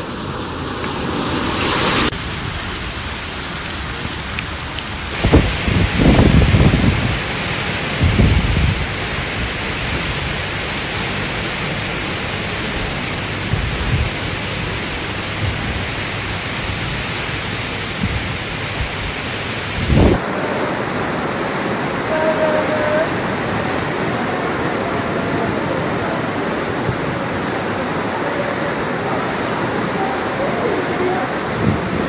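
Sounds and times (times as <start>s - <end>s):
wind buffeting microphone: 0.0s - 20.2s, 30.5s - 32.0s
gusting wind: 0.0s - 32.0s
heavy rain: 0.0s - 32.0s.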